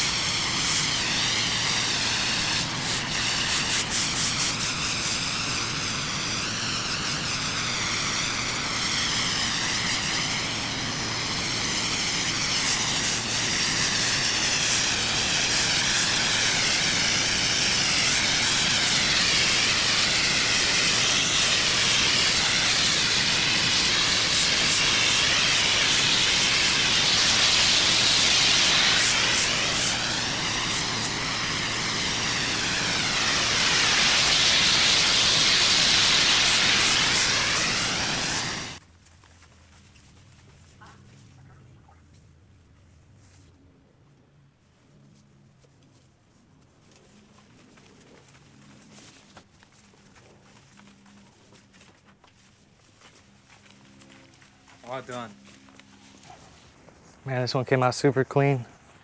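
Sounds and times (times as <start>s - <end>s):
pressure washer spraying concrete: 0.0s - 38.8s.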